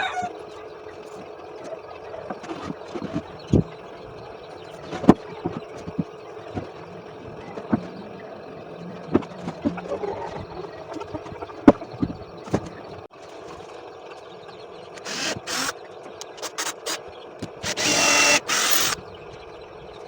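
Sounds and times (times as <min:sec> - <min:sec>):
faint steady hum: 0:00.0 - 0:20.0
parts and tools knocking: 0:14.9 - 0:19.4.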